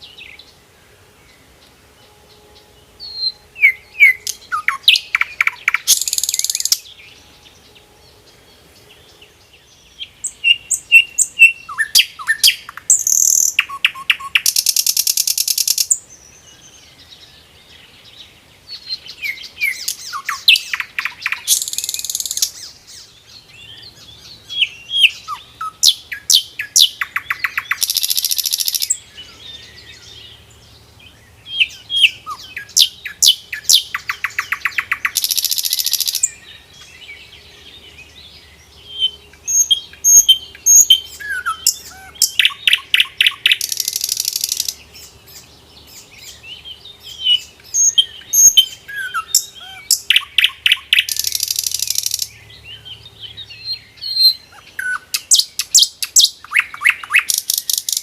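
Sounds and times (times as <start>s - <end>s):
nightingale singing: 0.0s - 58.0s.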